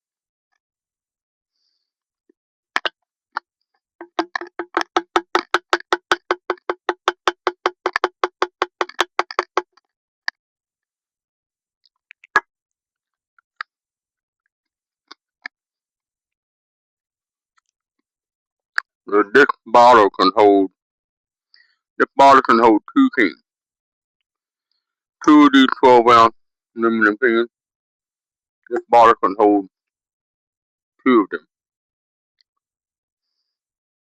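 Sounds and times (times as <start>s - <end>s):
sharp knock: 4.0s - 9.7s
clicks: 4.0s - 9.8s.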